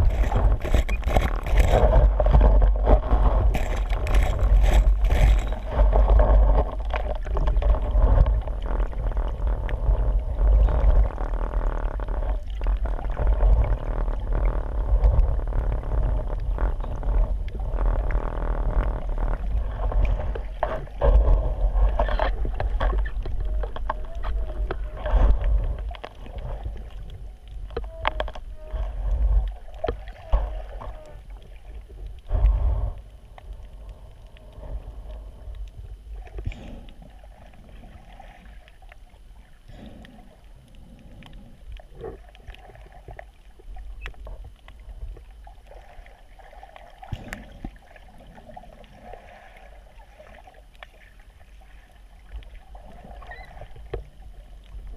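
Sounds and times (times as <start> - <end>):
heavy low rumble: 0.0 - 29.8
water surging and sloshing: 0.0 - 54.9.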